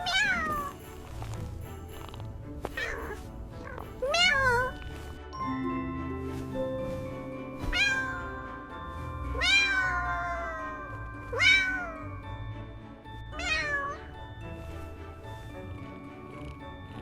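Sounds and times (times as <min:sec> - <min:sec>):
soft background music: 0:00.0 - 0:17.0
kitten meowing: 0:07.6 - 0:08.4, 0:09.3 - 0:12.2, 0:13.4 - 0:14.0.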